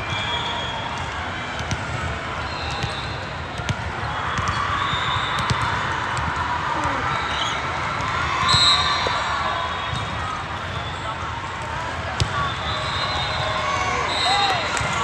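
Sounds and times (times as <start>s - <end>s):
murmur of voices: 5.6s - 15.0s.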